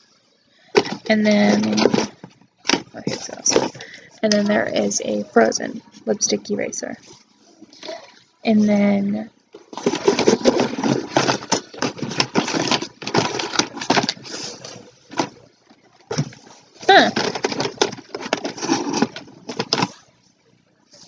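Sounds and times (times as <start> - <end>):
plastic packaging crinkling: 9.6 - 20.0.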